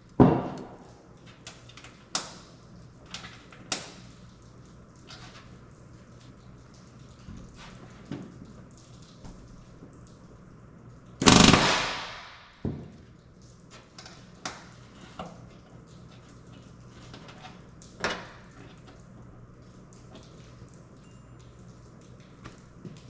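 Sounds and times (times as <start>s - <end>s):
pneumatic rivet gun burst: 11.2s - 12.4s.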